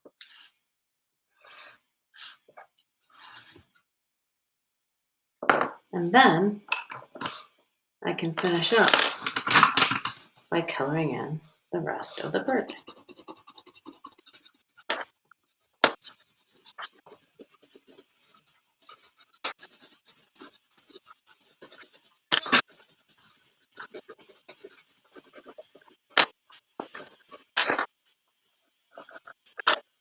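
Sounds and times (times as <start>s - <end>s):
drawing tool scratching on paper: 12.1s - 27.6s, 28.9s - 29.8s.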